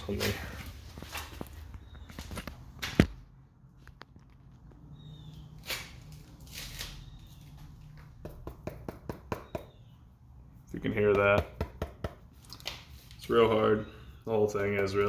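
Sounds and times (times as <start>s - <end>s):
knuckles rapping on a vegetable: 7.9s - 9.8s, 11.0s - 12.3s.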